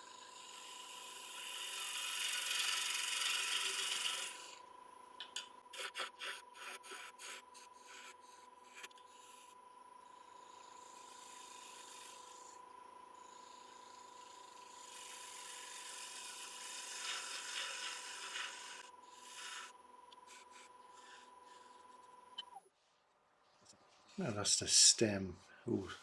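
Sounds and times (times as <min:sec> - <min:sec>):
turning tool scraping wood: 0:01.4 - 0:04.5, 0:05.8 - 0:09.4, 0:14.2 - 0:22.2.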